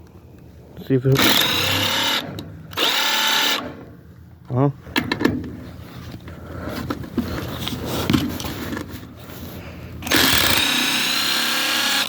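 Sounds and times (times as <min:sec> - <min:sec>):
power tool whining: 0:01.2 - 0:03.9, 0:10.0 - 0:12.0.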